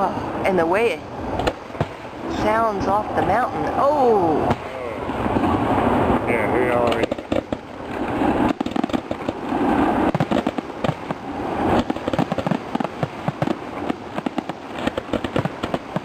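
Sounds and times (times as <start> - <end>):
fireworks bangs and crackles: 5.2 - 16.0.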